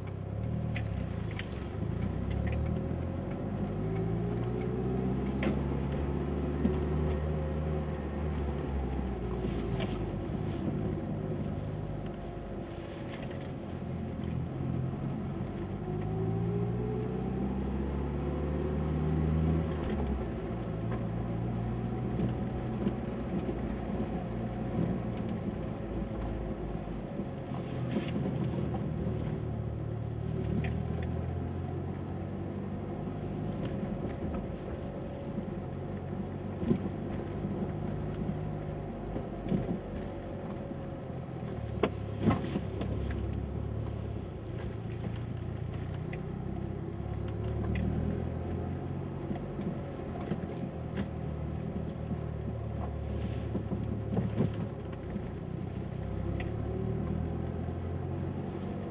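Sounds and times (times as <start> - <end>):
car engine accelerating: 0.0 - 58.9.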